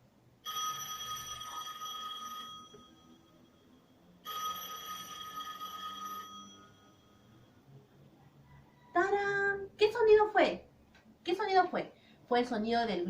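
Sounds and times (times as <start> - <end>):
telephone ringing: 0.4 - 3.4, 4.2 - 7.3.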